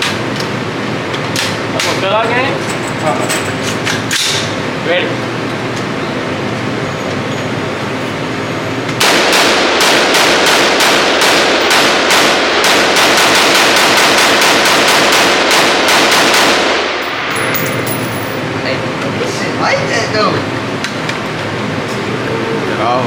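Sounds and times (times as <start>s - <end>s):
rapid gunfire: 9.0s - 17.0s.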